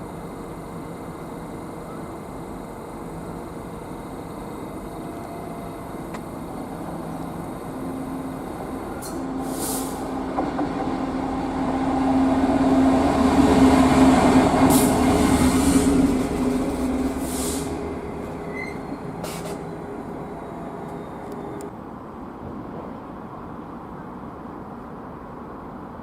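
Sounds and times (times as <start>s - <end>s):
freight train approaching: 0.0s - 22.4s
brief high hiss: 9.0s - 10.1s, 17.1s - 17.8s.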